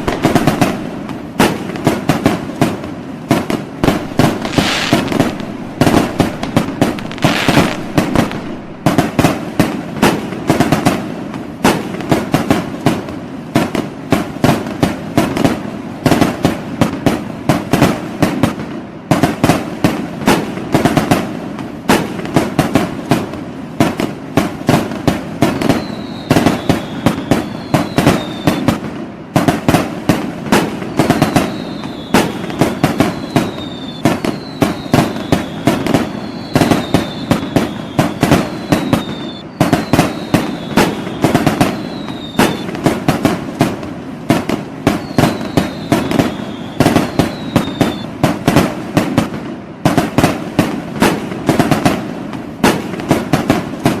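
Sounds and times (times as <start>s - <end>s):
firework whistles: 0.0s - 9.7s, 24.8s - 43.7s, 44.4s - 48.6s
fireworks bangs and crackles: 0.0s - 54.0s.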